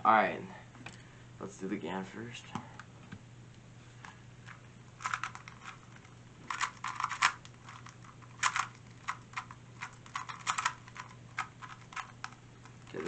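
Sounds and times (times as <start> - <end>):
faint low hum: 0.0 - 13.0
puzzle cube plastic clicks: 5.0 - 13.0.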